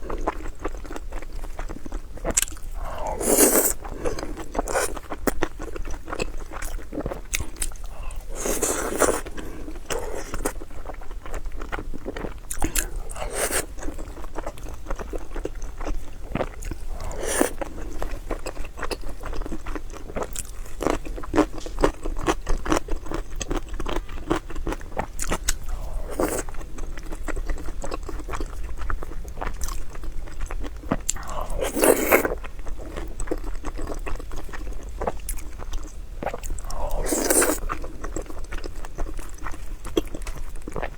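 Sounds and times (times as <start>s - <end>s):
chewing and biting: 0.0s - 40.9s
louder eating bursts: 2.8s - 5.2s, 7.3s - 10.6s, 12.5s - 13.9s, 16.6s - 18.2s, 31.1s - 32.4s, 36.5s - 37.8s.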